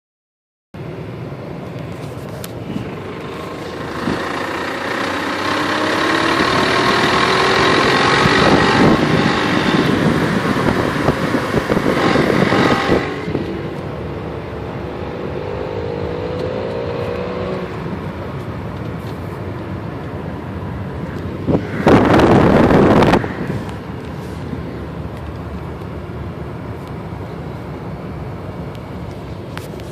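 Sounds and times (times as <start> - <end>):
car engine revving: 2.1 - 26.0
loud rushing noise: 2.6 - 14.3, 20.3 - 25.1.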